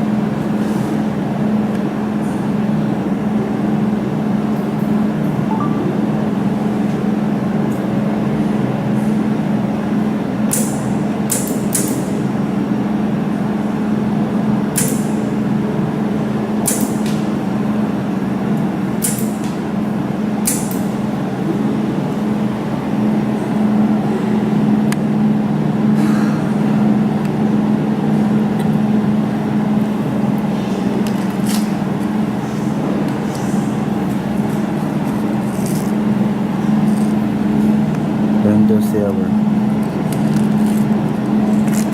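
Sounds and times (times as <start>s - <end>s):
sharp laser welder clicks: 10.5s - 12.1s, 14.8s - 15.1s, 16.6s - 17.1s, 19.0s - 19.5s, 20.4s - 20.8s
welding machine humming: 28.0s - 38.4s.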